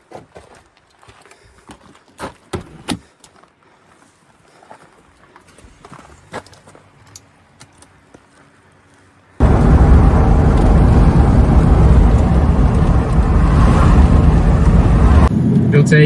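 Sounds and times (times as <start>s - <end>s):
vehicle road and wind noise: 5.6s - 16.0s.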